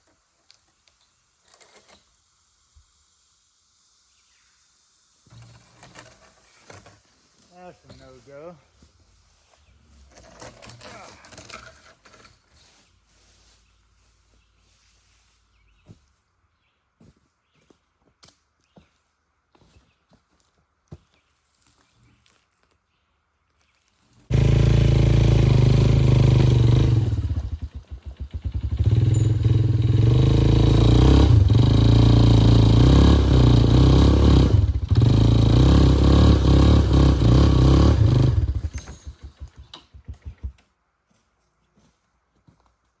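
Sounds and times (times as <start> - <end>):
two-stroke chainsaw running: 24.3 - 40.6.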